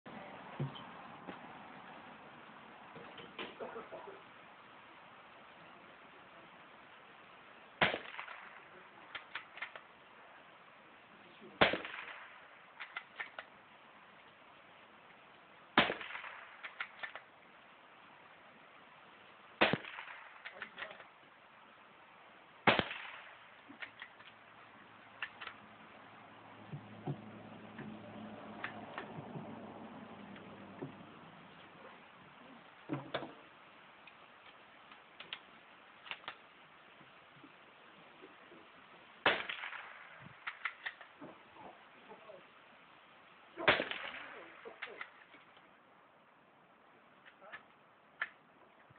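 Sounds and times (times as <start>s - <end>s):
rifle shot: 7.8s - 9.8s, 11.6s - 13.4s, 15.8s - 17.3s, 19.6s - 21.1s, 22.6s - 24.3s, 39.2s - 41.1s, 43.6s - 45.2s.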